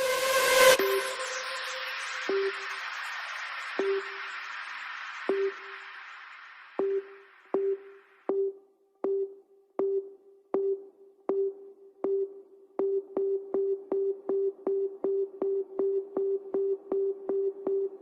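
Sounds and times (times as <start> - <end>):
electronic beep with sharp click: 2.3 - 2.9, 3.8 - 4.2, 5.3 - 5.7, 6.8 - 8.5.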